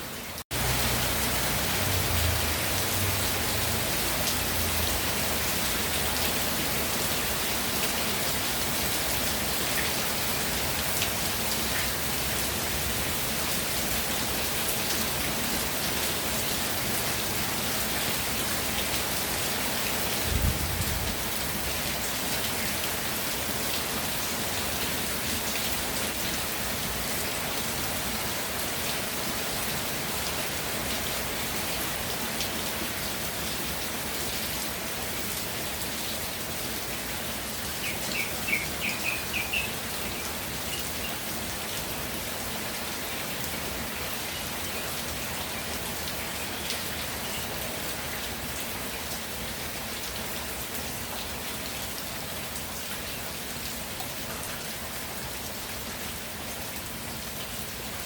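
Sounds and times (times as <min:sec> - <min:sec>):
steady rainfall: 0:00.0 - 0:58.0
bird chirping: 0:37.8 - 0:41.2.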